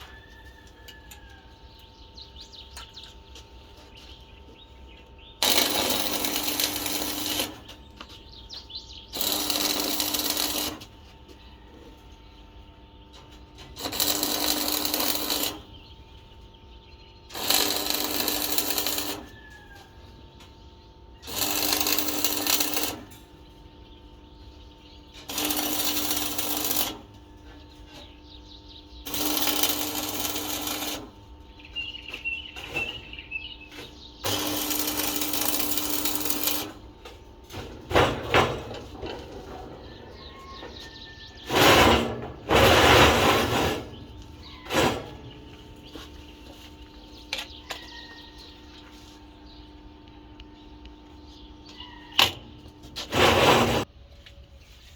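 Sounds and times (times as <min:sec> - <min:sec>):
arc welding bursts: 0:05.4 - 0:07.8, 0:09.0 - 0:11.0, 0:13.6 - 0:15.8, 0:17.2 - 0:19.4, 0:21.2 - 0:23.4, 0:25.0 - 0:27.2, 0:29.0 - 0:31.4, 0:34.2 - 0:38.8, 0:41.4 - 0:45.3, 0:53.0 - 0:53.9.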